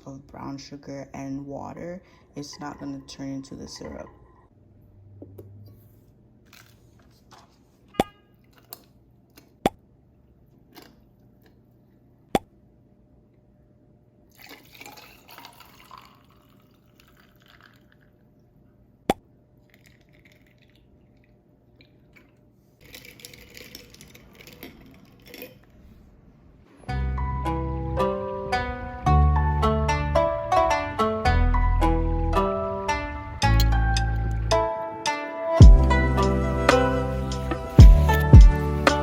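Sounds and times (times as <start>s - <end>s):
liquid being poured and stirred: 14.3s - 18.6s, 19.6s - 26.4s.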